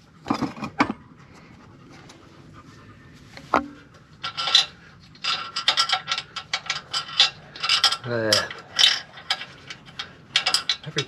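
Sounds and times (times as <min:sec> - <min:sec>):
metal parts knocking: 0:04.2 - 0:11.0.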